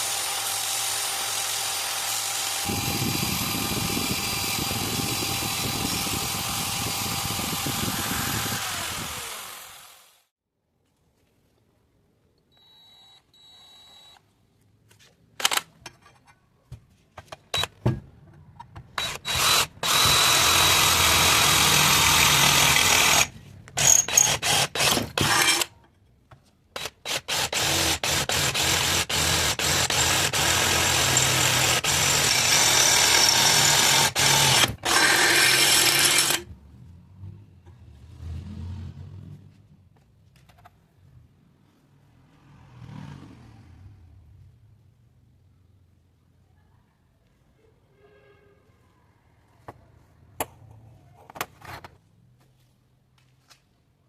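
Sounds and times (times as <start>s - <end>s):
power tool running on metal: 0.0s - 10.2s, 27.3s - 36.4s.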